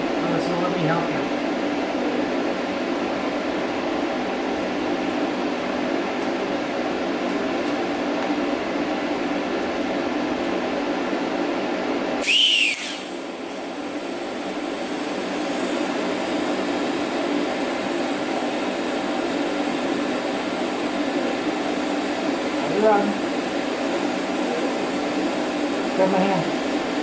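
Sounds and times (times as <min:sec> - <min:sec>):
steady machine hum: 0:00.0 - 0:27.0
whistle rising and falling: 0:12.2 - 0:13.2.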